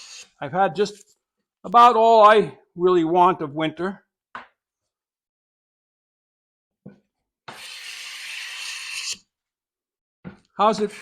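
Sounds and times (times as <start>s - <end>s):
hand plane cutting wood: 7.5s - 9.2s.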